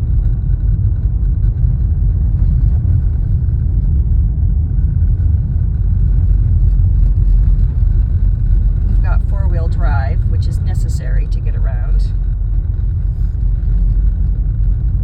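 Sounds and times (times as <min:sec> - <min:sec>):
car tyres and engine rumbling: 0:00.0 - 0:15.0.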